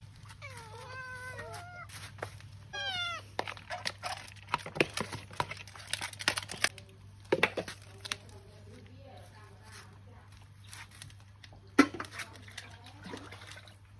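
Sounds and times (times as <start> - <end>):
cat meowing: 0.4 - 1.9, 2.7 - 3.3.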